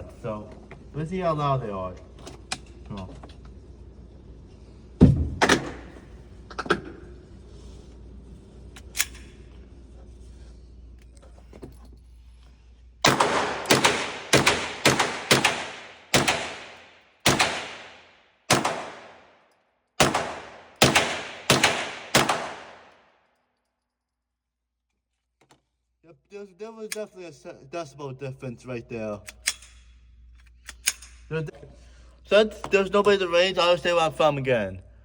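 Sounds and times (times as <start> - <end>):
handgun shots echoing: 13.0 - 19.3, 20.0 - 23.0.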